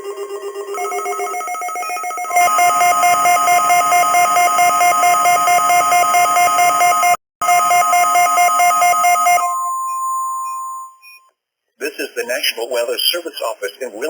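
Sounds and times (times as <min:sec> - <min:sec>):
rapid electronic beeping alarm: 0:00.0 - 0:09.6
steady warning alarm tone: 0:00.1 - 0:11.2.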